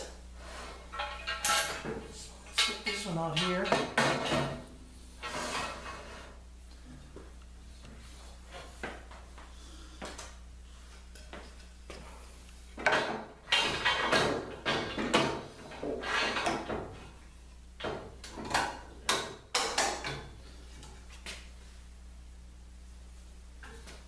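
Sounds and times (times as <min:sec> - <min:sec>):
metal clattering and rattling: 0:12.8 - 0:16.9.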